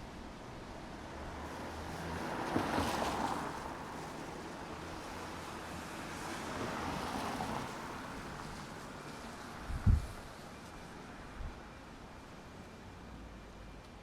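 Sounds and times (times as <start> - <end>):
street traffic hum: 0.0 - 14.0
vehicles passing: 0.2 - 10.7.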